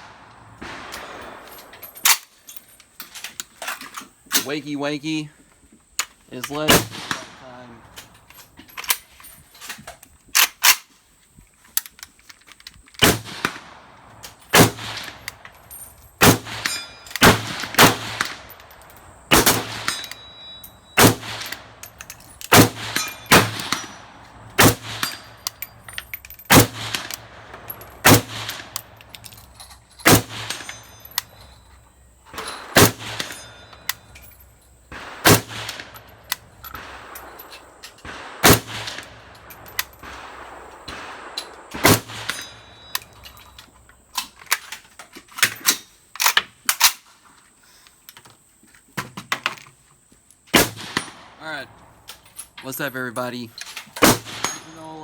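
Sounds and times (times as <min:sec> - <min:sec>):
rifle single shots: 0:00.0 - 0:02.5, 0:06.3 - 0:08.3, 0:13.0 - 0:43.6, 0:50.5 - 0:55.0.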